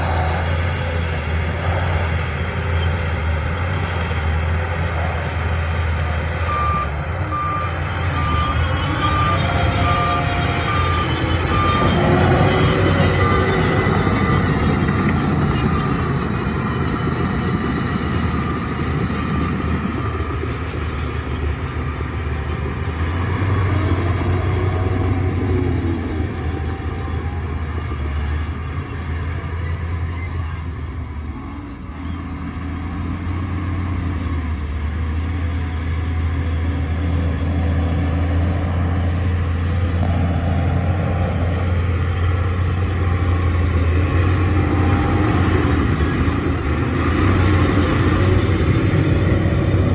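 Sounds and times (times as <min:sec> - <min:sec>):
bulldozer diesel engine running: 0:00.0 - 0:49.9.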